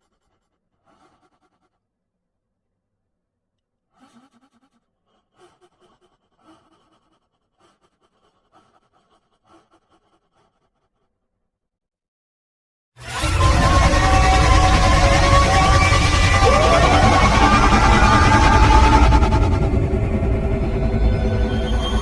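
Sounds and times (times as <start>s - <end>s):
breathy vocal sounds: 0.0s - 1.8s, 3.9s - 11.1s.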